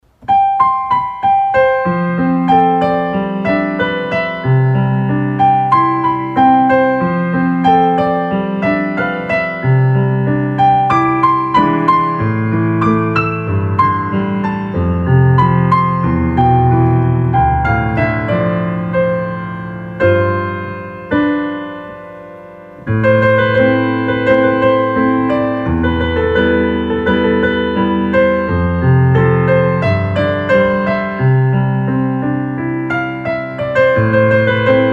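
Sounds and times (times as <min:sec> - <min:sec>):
slow calm piano music: 0:00.0 - 0:34.9.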